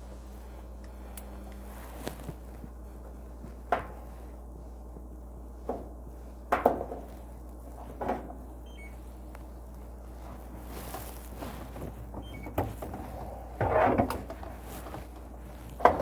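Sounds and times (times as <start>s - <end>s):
steady low hum: 0.0s - 16.0s
parts knocking and clattering: 5.7s - 7.2s, 7.9s - 8.4s.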